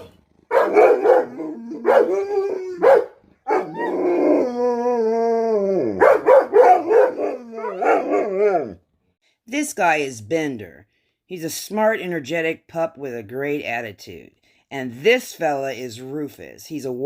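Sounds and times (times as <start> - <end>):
dogs barking: 0.4 - 4.2, 6.0 - 8.8
dog howling: 0.5 - 8.8.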